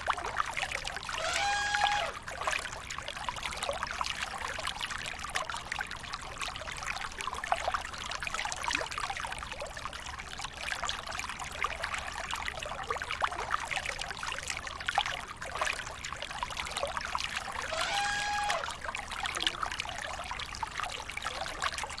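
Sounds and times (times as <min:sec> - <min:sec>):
water splashing and trickling: 0:00.0 - 0:22.0
short pitched animal call: 0:01.2 - 0:02.2, 0:17.6 - 0:18.7.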